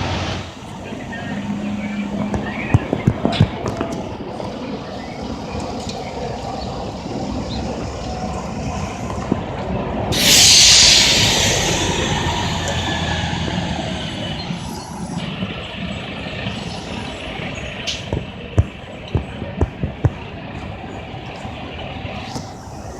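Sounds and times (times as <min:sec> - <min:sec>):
fire engine idling: 0:00.0 - 0:22.9
air brake hiss: 0:10.1 - 0:14.8.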